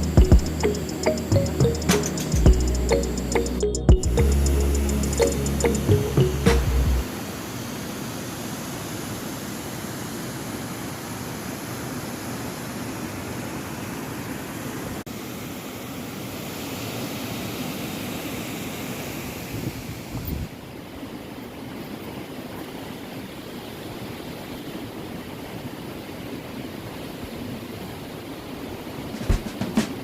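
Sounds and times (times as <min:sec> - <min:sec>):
river water rushing: 0:04.3 - 0:30.0.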